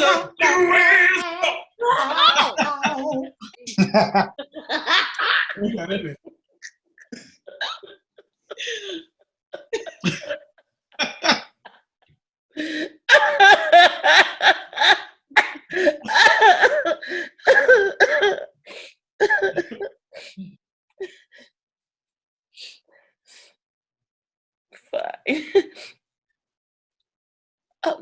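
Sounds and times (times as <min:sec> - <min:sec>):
woman coughing: 0:13.1 - 0:18.5, 0:19.2 - 0:19.9.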